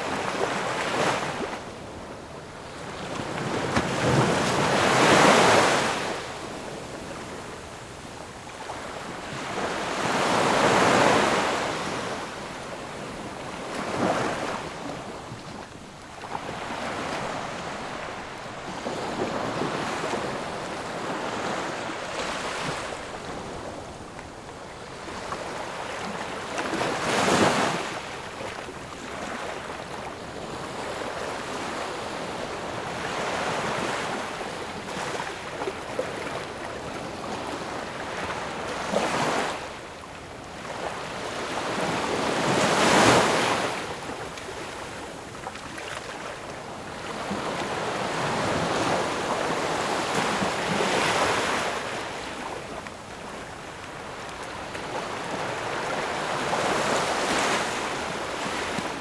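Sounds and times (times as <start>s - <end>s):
ocean waves breaking: 9.3s - 24.0s.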